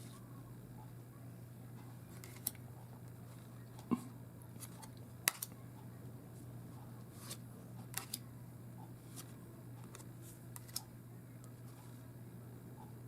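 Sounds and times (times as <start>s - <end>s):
low steady hum: 0.0s - 13.0s
cards clicking and snapping: 2.2s - 2.6s, 4.6s - 5.6s, 7.2s - 8.2s, 9.1s - 10.9s.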